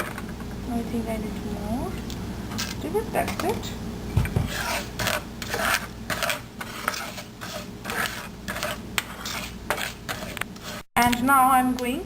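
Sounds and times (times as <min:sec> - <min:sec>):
spoon stirring seeds in pan: 0:04.5 - 0:10.9.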